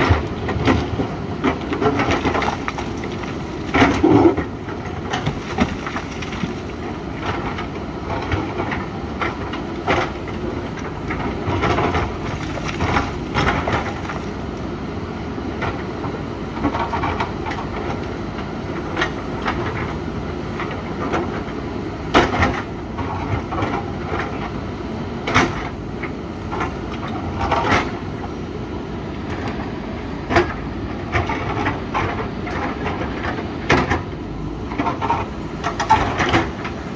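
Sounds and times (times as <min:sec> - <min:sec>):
diesel engine running: 0:00.0 - 0:36.9
bucket scraping and digging rock: 0:01.8 - 0:04.5, 0:05.1 - 0:06.8
stone knocks and crunches: 0:05.2 - 0:06.8, 0:12.1 - 0:14.4.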